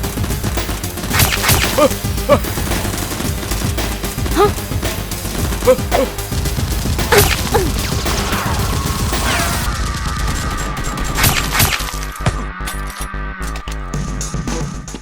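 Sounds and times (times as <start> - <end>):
background music: 0.0 - 9.7.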